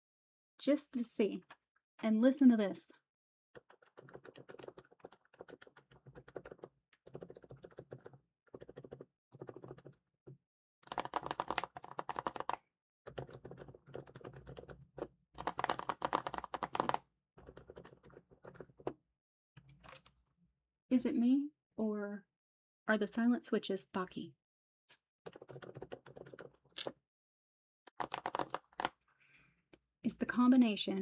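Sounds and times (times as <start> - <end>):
soft keyboard keystrokes: 3.6 - 10.0, 10.8 - 19.0, 25.3 - 27.0, 27.9 - 28.9.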